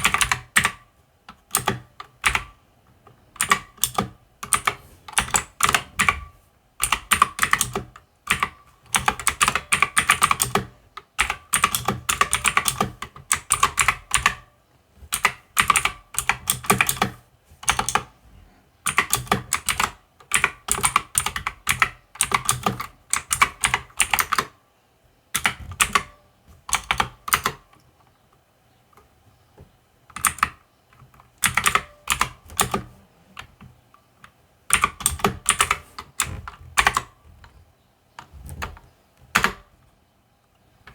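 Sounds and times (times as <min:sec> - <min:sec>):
mechanical keyboard typing: 0:00.0 - 0:02.6, 0:03.4 - 0:14.5, 0:15.1 - 0:18.1, 0:18.9 - 0:24.6, 0:25.4 - 0:27.8, 0:30.1 - 0:33.7, 0:34.7 - 0:37.2, 0:39.3 - 0:39.7.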